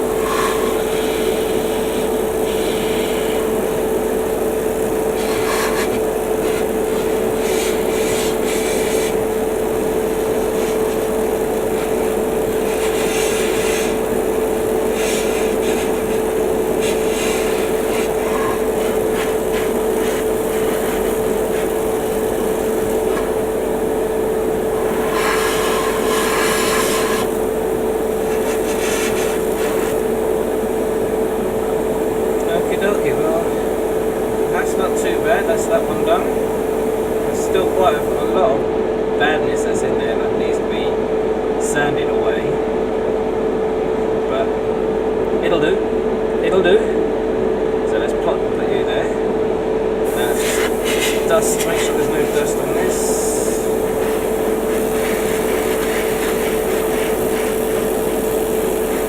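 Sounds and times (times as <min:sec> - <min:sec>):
airbrush hissing bursts: 0:00.0 - 0:30.9, 0:50.0 - 0:59.0
air compressor running: 0:00.0 - 0:59.0
extractor fan humming: 0:00.0 - 0:59.0.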